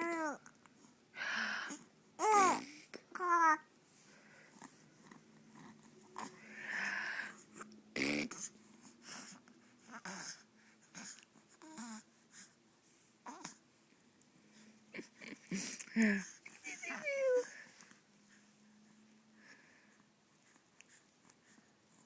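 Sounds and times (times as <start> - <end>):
baby sputtering and wheezing: 8.0 - 8.5.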